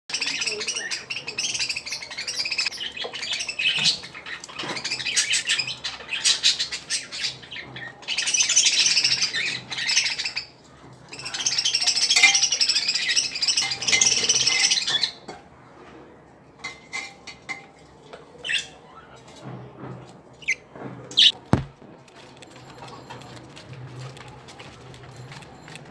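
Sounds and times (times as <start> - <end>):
budgerigars chattering and squawking: 21.2 - 21.4.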